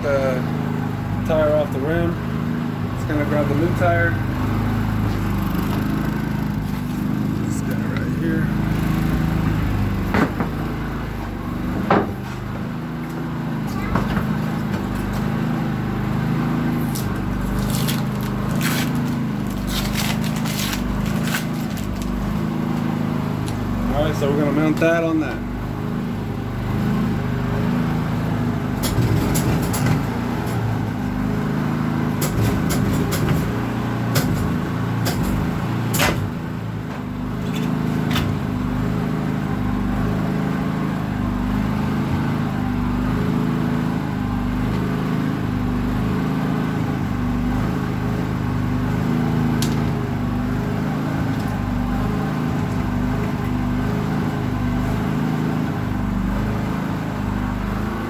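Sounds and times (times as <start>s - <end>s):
engine droning: 0.0s - 58.0s
tire mounting clicks and knocks: 8.9s - 15.5s, 32.1s - 38.6s, 49.5s - 50.3s.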